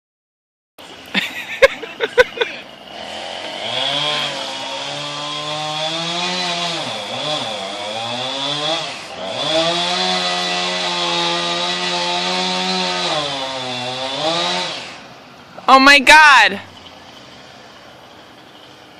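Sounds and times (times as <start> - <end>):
chainsaw running: 1.2 - 15.2.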